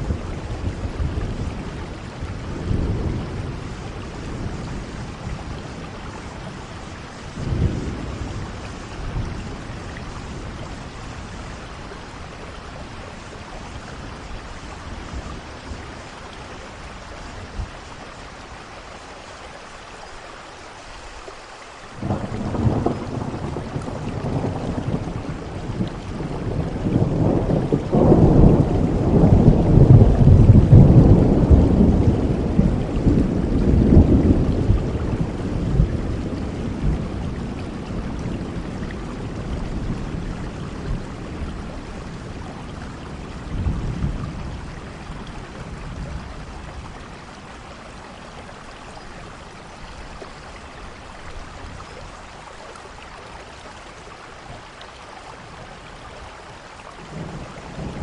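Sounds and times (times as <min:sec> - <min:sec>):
thunder rumbling: 0:00.0 - 0:18.0, 0:22.0 - 0:48.6, 0:57.0 - 0:58.0
steady rain: 0:00.0 - 0:58.0.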